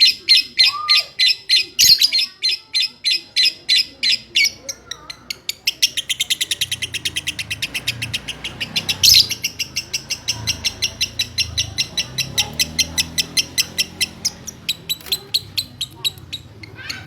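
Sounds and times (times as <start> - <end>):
songbird chirping: 0.0 - 17.0
harsh bird call: 5.8 - 17.0.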